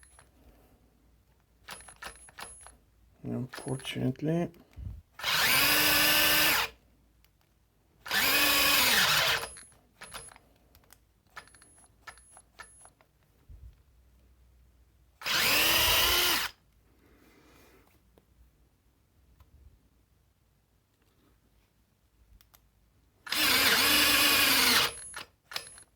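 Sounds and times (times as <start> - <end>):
cordless drill whining: 5.2 - 6.8, 8.1 - 10.4, 15.2 - 16.6, 23.3 - 25.8.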